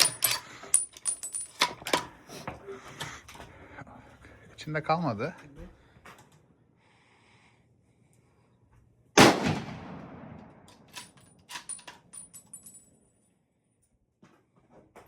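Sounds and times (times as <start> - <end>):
gunshot: 9.2 - 10.4.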